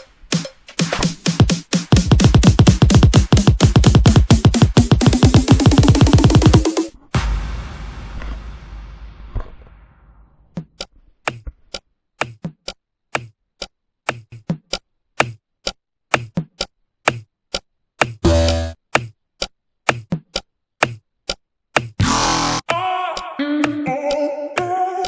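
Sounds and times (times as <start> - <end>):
noisy burst: 6.1 - 10.5.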